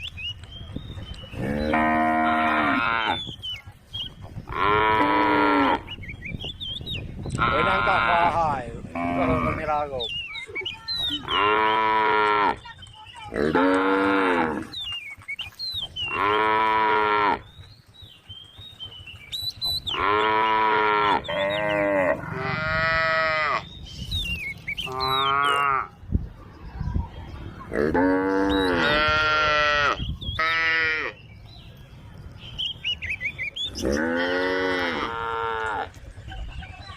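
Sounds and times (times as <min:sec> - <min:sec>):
cows mooing: 0:01.4 - 0:03.2, 0:04.5 - 0:05.9, 0:07.4 - 0:09.8, 0:11.2 - 0:12.7, 0:13.3 - 0:14.8, 0:16.1 - 0:17.5, 0:19.9 - 0:23.7, 0:24.9 - 0:26.0, 0:27.7 - 0:31.2, 0:33.8 - 0:36.0.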